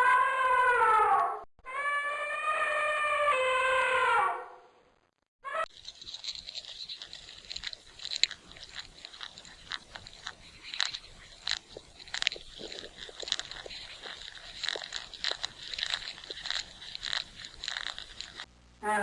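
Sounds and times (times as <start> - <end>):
animal chewing and crunching food: 5.6 - 18.5.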